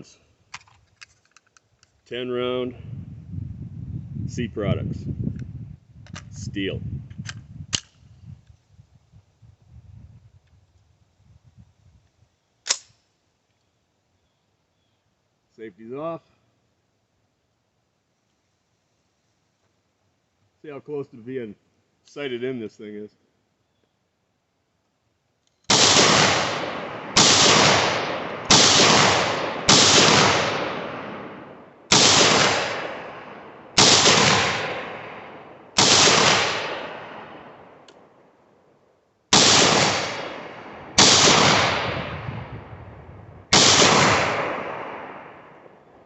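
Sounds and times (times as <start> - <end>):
gunshots with echo: 25.7 - 37.8, 39.3 - 42.6, 43.5 - 45.7.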